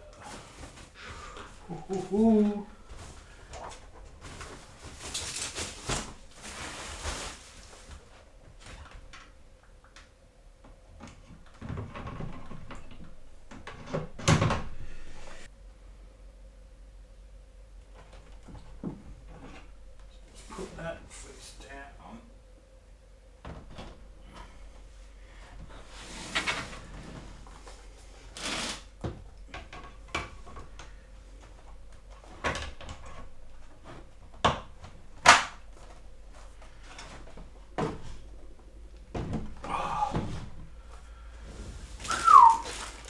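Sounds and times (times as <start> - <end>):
packaging rustling: 2.9 - 8.1, 41.8 - 43.0.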